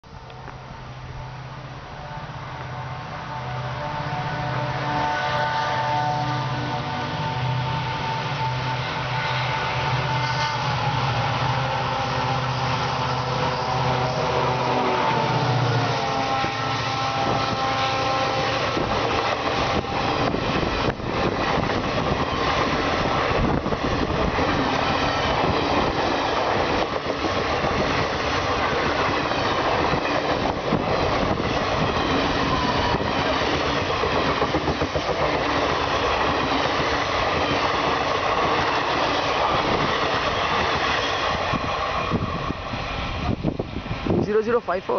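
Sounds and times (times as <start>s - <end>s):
diesel locomotive engine: 0.0s - 44.9s
train wheels clattering over rails: 9.4s - 43.4s.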